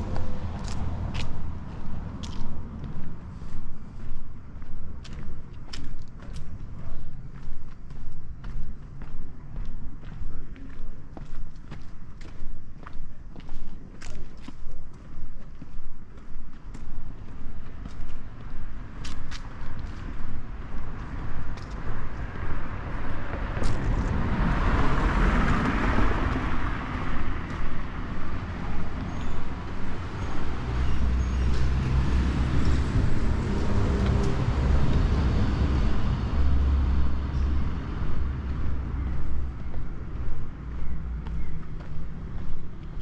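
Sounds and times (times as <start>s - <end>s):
vehicle passing: 0.0s - 4.6s, 18.8s - 43.0s
footsteps walking: 0.0s - 24.3s, 25.7s - 43.0s
large vehicle engine rumble: 19.7s - 43.0s.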